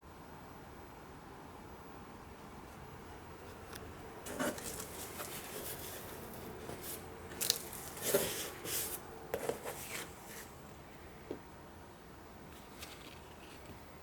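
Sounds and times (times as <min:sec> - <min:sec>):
packaging rustling: 0:04.3 - 0:10.5.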